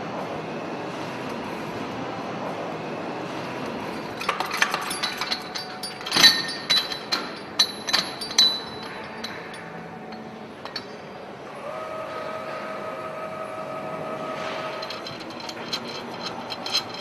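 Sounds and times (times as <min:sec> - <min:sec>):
metal parts clinking: 0:04.0 - 0:11.2, 0:14.4 - 0:17.0.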